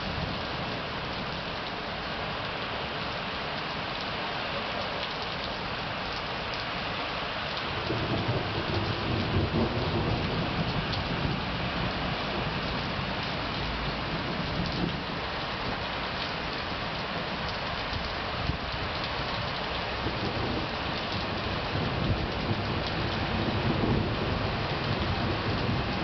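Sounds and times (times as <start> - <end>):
rain falling: 0.0 - 26.0
raindrops ticking: 4.7 - 26.0
thunder rumbling: 7.7 - 13.2, 19.9 - 26.0.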